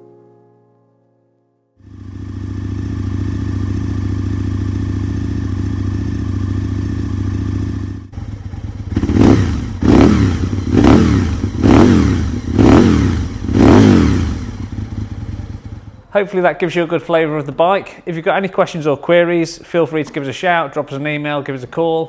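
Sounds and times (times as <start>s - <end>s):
motorcycle engine idling and revving: 1.8s - 16.1s.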